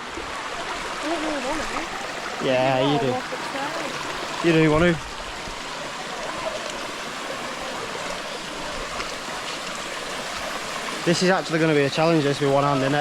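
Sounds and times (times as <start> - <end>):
waterfall rushing: 0.0 - 13.0.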